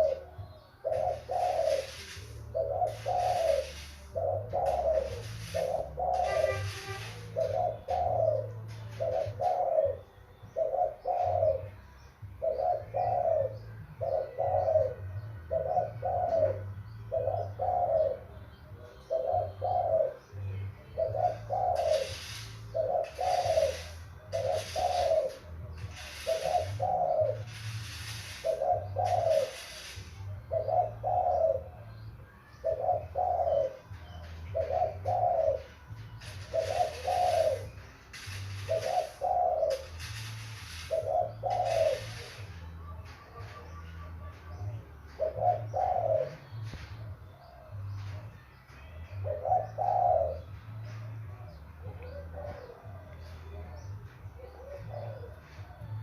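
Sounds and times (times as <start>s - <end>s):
dove cooing: 0.0s - 48.5s, 49.2s - 55.8s
high hissing sound: 1.4s - 7.3s, 21.8s - 25.3s, 25.9s - 30.2s, 36.3s - 42.6s.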